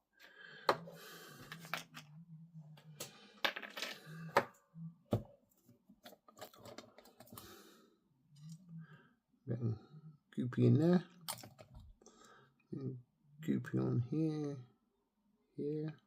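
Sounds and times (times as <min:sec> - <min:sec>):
plastic parts clicking and tapping: 0:06.0 - 0:07.4, 0:11.2 - 0:11.9.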